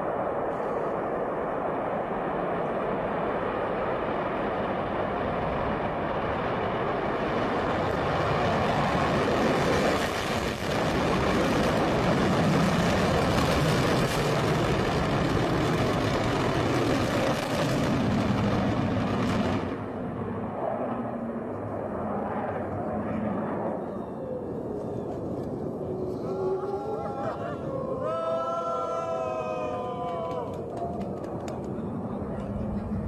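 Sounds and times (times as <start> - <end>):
rocket exhaust roar: 0.0 - 33.0.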